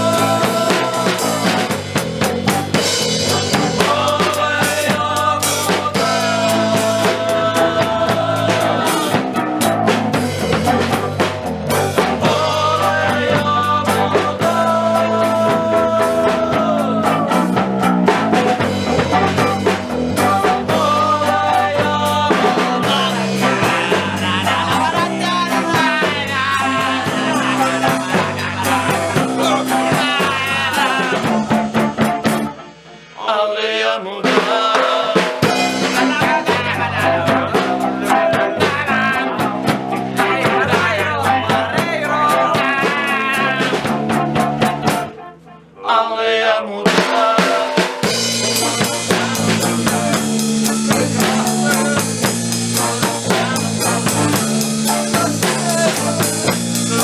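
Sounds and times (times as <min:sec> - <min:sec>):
repeating bass line: 0:00.0 - 0:32.6, 0:48.0 - 0:57.0
drums: 0:00.0 - 0:45.8, 0:46.4 - 0:57.0
band music: 0:00.0 - 0:57.0.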